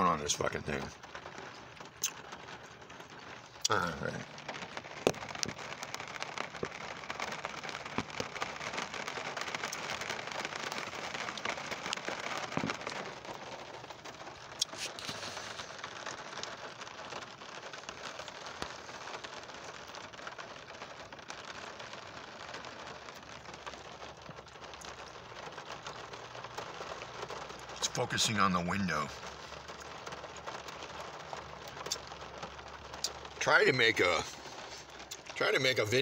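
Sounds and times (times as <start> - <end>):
rain on a car: 0.0 - 36.0.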